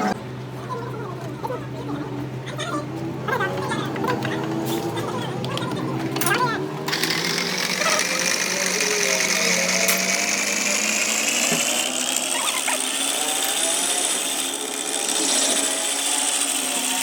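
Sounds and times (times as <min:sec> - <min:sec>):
power tool whining: 0:06.1 - 0:17.0.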